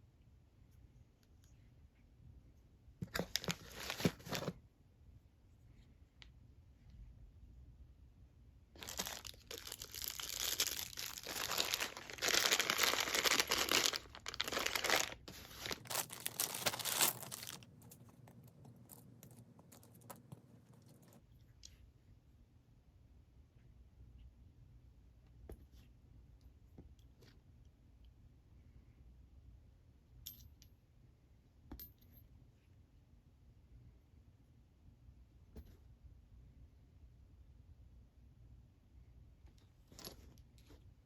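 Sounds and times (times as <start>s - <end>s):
packaging tearing and crinkling: 8.8s - 20.3s.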